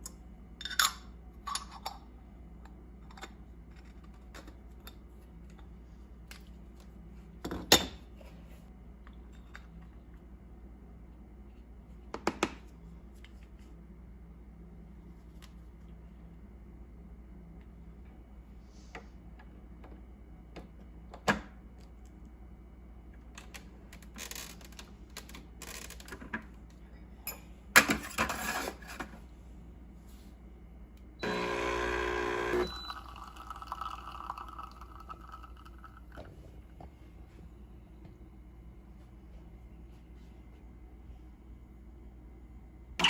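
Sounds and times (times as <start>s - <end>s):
machine running: 31.2s - 33.8s
espresso pump buzz: 31.2s - 35.9s.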